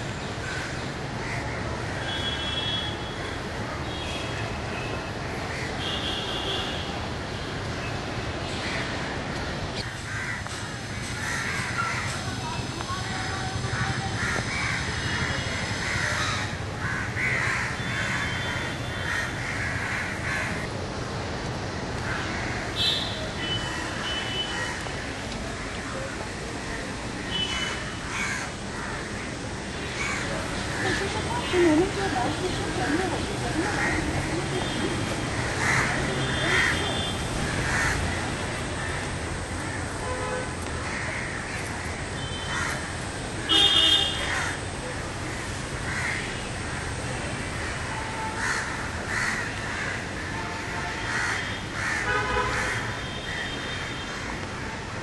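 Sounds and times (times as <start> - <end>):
rumble of vehicles: 0.0 - 55.0
crows cawing: 0.4 - 2.2, 9.8 - 12.2, 13.1 - 20.7, 22.0 - 22.9, 25.6 - 40.0, 40.8 - 44.7, 45.3 - 46.8, 47.6 - 50.2, 50.9 - 54.4.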